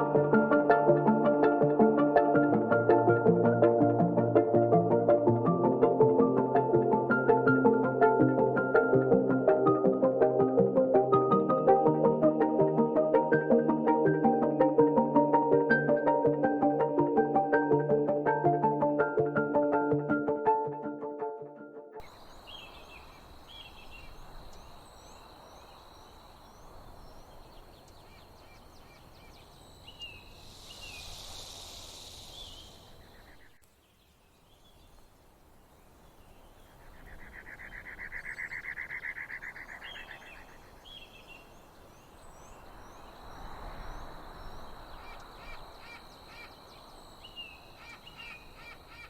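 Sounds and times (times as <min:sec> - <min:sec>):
small birds chirping: 0:22.0 - 0:49.0
high insect-like whine: 0:29.5 - 0:33.4.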